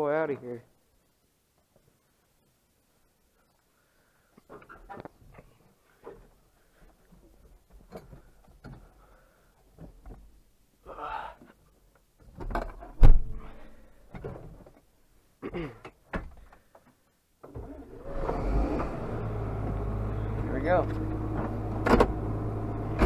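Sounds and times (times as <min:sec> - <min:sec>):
tractor diesel engine starting: 0:17.5 - 0:23.0.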